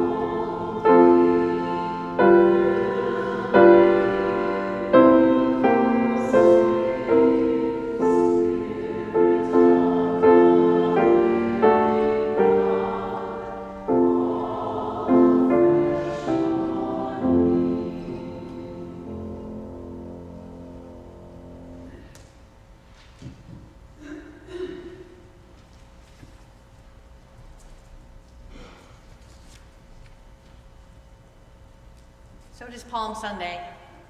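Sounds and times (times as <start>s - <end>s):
choir singing: 0.0s - 21.9s
piano chords: 0.0s - 22.1s.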